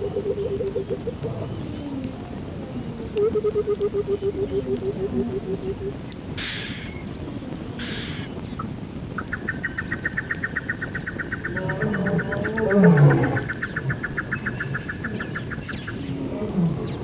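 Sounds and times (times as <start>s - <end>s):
high bird chirps: 6.4s - 7.1s, 7.8s - 16.1s
low calls falling in pitch: 11.4s - 15.5s.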